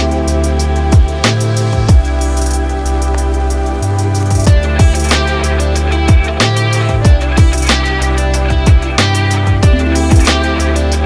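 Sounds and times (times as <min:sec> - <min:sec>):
electronic music with deep bass: 0:00.0 - 0:11.0
kick drum hits: 0:09.6 - 0:10.3.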